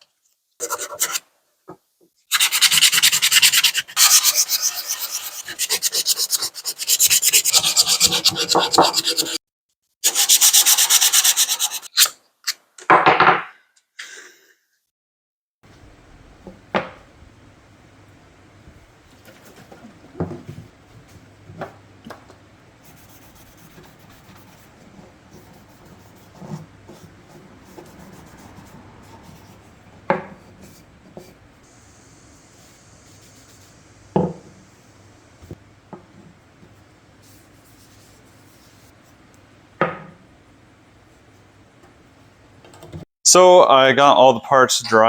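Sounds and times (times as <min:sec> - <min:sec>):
objects knocking on hard surface: 0:16.4 - 0:17.1, 0:19.3 - 0:20.7, 0:34.2 - 0:34.5.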